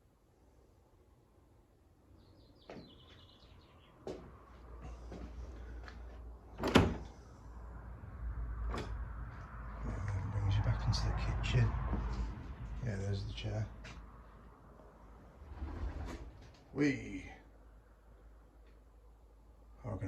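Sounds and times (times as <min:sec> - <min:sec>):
door banging: 0:06.5 - 0:07.2, 0:08.6 - 0:09.2
old door squeaking and knocking: 0:06.6 - 0:07.1.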